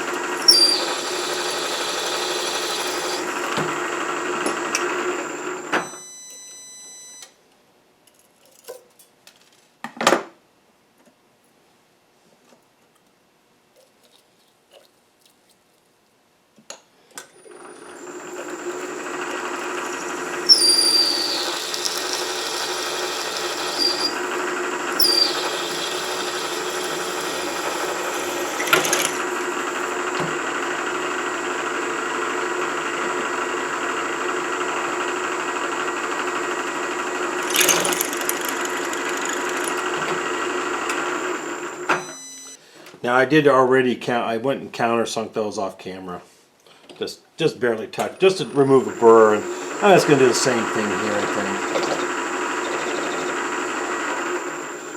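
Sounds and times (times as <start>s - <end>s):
milling machine spindle running: 0.0s - 5.7s, 17.8s - 30.7s, 37.1s - 41.8s, 48.8s - 54.8s
high falling squeals: 0.1s - 3.4s, 18.0s - 29.9s, 37.4s - 40.1s.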